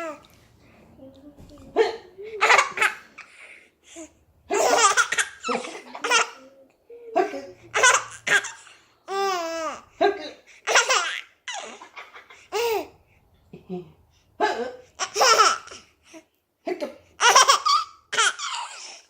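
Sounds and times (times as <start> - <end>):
baby laughing: 1.8 - 3.4, 4.5 - 9.8, 10.7 - 12.9, 15.0 - 15.9, 17.2 - 19.0.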